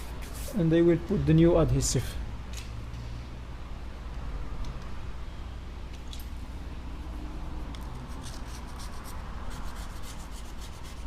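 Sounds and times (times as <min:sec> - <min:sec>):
steady low hum: 0:00.0 - 0:11.0
small tool scraping: 0:07.8 - 0:11.0.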